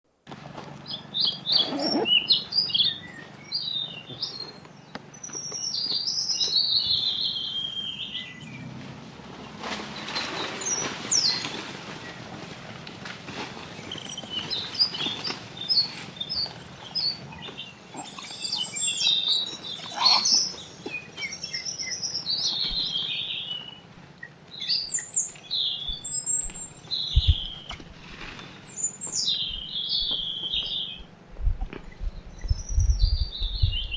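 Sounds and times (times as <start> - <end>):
squeaky animal chirps and squeals: 1.5 - 2.4, 19.7 - 20.5.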